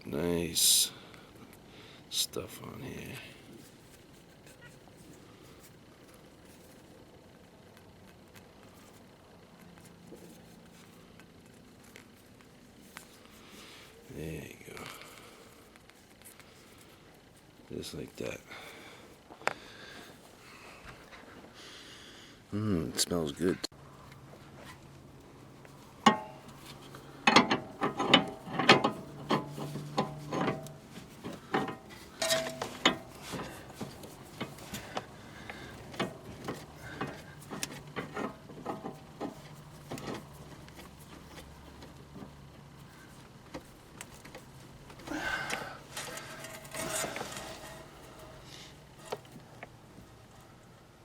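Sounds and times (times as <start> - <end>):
metal tools clicking and clanking: 26.0 - 41.8, 45.0 - 49.3.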